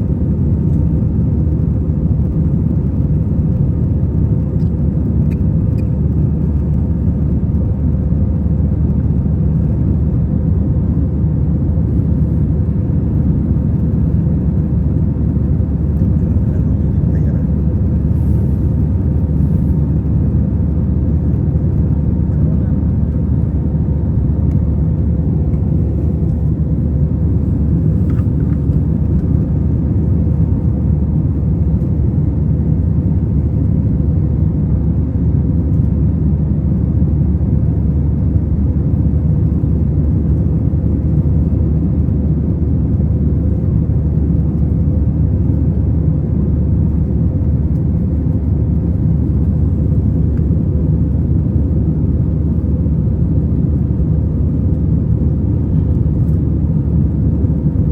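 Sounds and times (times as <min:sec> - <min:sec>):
jet engines and airflow in cabin: 0:00.0 - 0:57.9.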